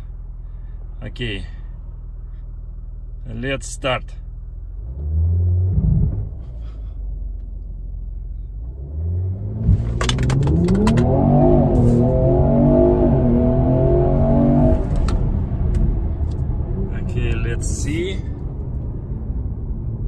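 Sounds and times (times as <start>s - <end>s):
car engine accelerating: 4.6s - 7.8s, 8.6s - 20.0s.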